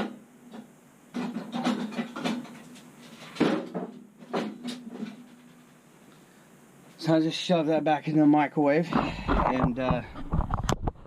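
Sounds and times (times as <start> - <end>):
metal clunks and rattles: 1.2 - 2.6.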